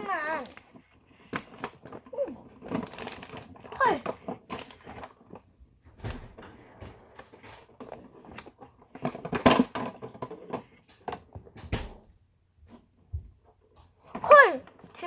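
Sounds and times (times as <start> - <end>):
packaging rustling: 0.4 - 9.7.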